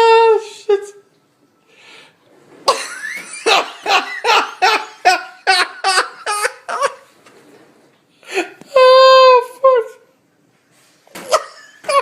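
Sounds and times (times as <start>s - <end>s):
person laughing hard: 2.7s - 7.1s, 11.2s - 12.0s.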